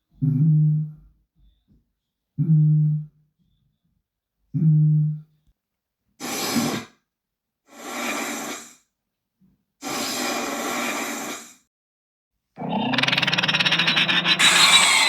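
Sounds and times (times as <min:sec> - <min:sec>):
creature breathy exhalations: 0:12.6 - 0:15.0.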